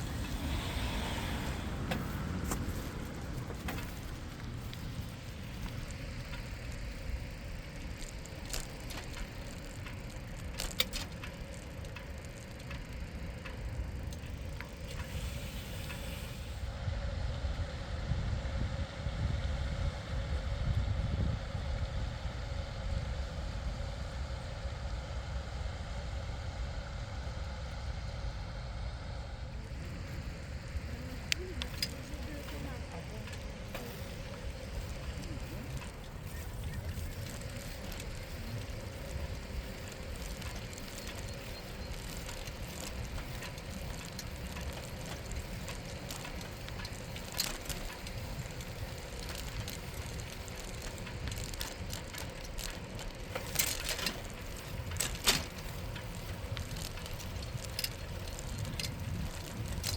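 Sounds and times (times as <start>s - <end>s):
bicycle tyre noise: 0.0s - 59.9s
wind rumble on microphone: 0.0s - 59.9s
sharp clicks and rattles: 1.6s - 16.2s, 30.0s - 59.9s.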